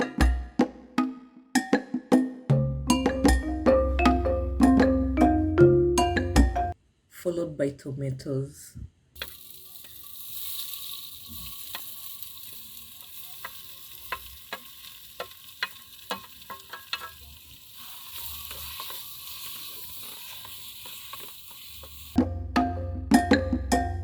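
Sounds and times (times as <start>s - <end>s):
utensil clicking and scraping pot: 9.2s - 22.2s
vegetables sizzling in oil: 9.2s - 22.2s.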